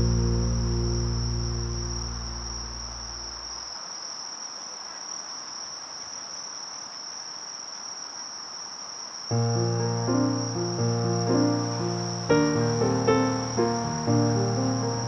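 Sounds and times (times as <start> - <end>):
background music with low notes: 0.0 - 2.8, 9.6 - 15.0
insects trilling: 0.0 - 15.0.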